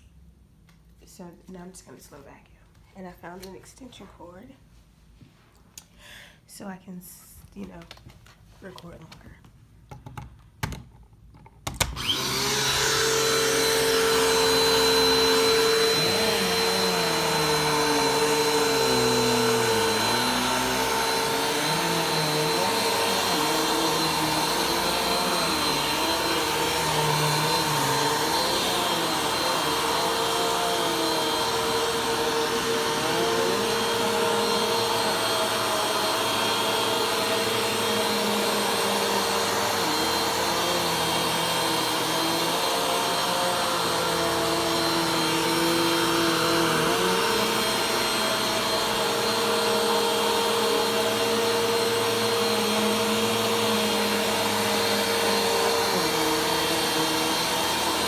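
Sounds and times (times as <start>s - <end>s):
vacuum cleaner running: 11.8s - 58.0s.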